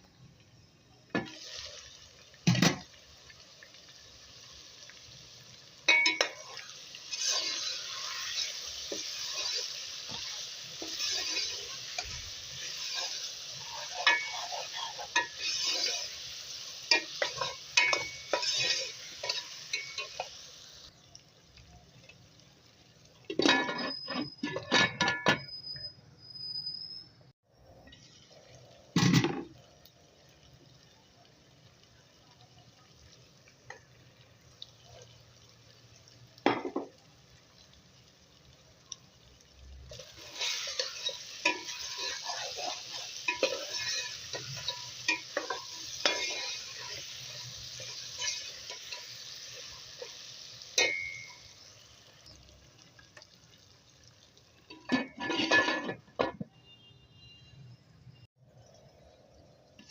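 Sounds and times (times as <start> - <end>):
food sizzling in a pot: 0.0 - 56.8, 57.6 - 59.9
metal spoon scraping and clinking: 5.9 - 16.1, 16.9 - 20.3, 23.3 - 25.5, 39.9 - 49.2, 50.8 - 51.4, 54.7 - 56.4.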